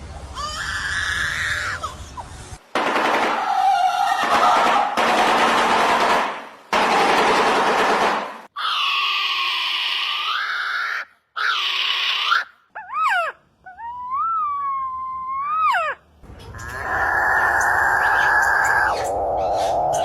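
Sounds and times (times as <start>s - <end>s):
harsh rasping bird calls: 15.7s - 20.0s.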